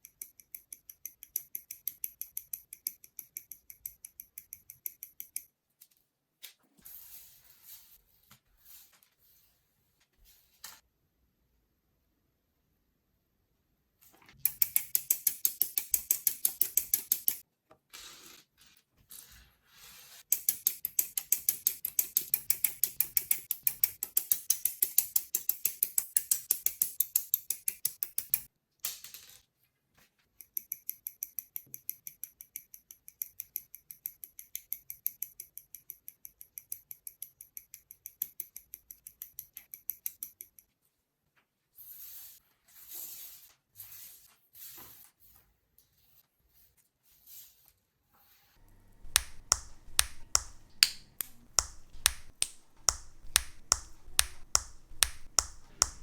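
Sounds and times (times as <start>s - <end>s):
ratcheting clicks: 14.4s - 17.4s, 20.3s - 28.5s, 48.7s - 56.0s.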